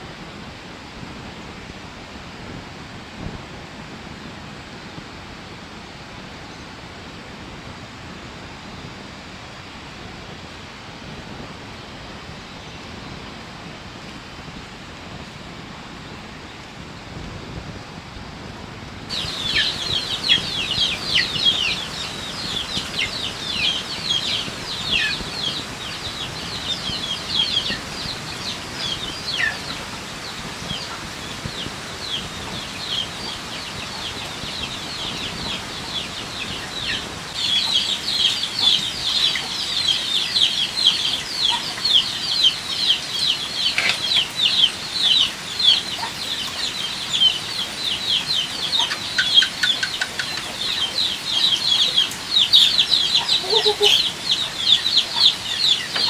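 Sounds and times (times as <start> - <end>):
chicks peeping: 19.1 - 56.0.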